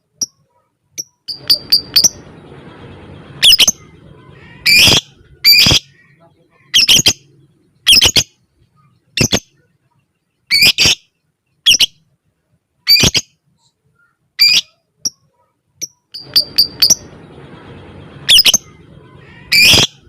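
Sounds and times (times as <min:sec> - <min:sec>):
lovebird shrill calls: 0:01.3 - 0:02.3, 0:03.3 - 0:06.0, 0:06.7 - 0:07.2, 0:16.1 - 0:17.3, 0:18.1 - 0:20.0.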